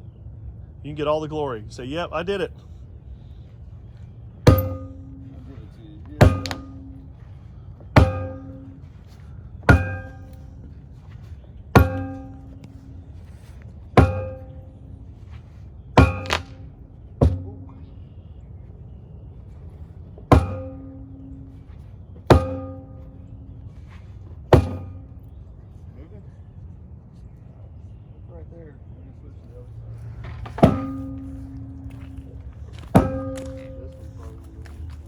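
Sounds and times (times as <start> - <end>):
hammer striking piling with metallic ring: 4.5 - 7.3, 7.9 - 10.8, 11.8 - 13.2, 14.0 - 14.8, 16.0 - 17.9, 20.3 - 23.6, 24.5 - 25.3, 30.1 - 35.0.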